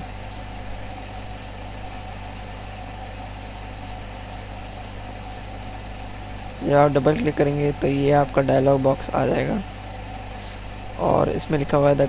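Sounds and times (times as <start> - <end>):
electrical hum: 0.0 - 12.0
microphone hiss: 5.1 - 12.0.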